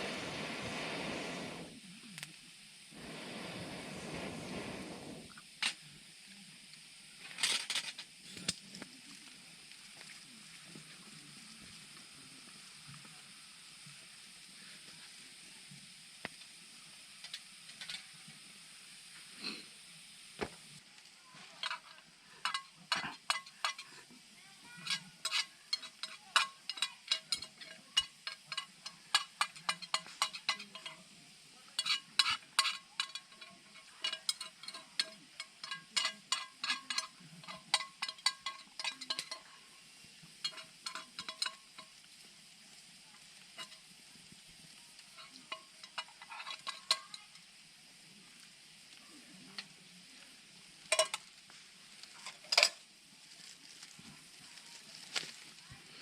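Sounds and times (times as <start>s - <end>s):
metal utensil scraping metal pan: 21.6s - 24.0s, 24.8s - 31.0s, 31.8s - 39.6s, 40.4s - 41.8s, 43.6s - 43.8s, 45.1s - 47.2s.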